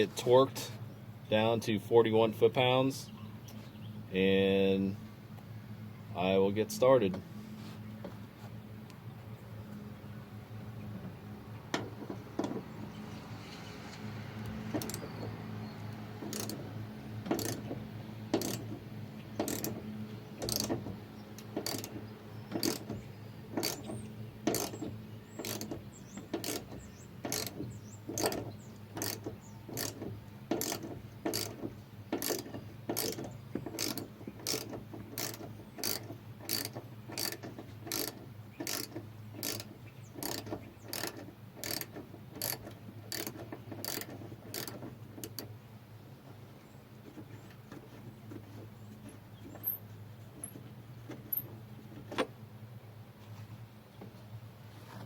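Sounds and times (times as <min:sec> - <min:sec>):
ratchet wrench clicking: 0:16.3 - 0:16.6, 0:17.3 - 0:17.6, 0:18.4 - 0:18.7, 0:19.4 - 0:19.8, 0:20.4 - 0:20.8, 0:21.6 - 0:22.9, 0:24.5 - 0:27.6, 0:29.0 - 0:31.6, 0:32.2 - 0:45.4.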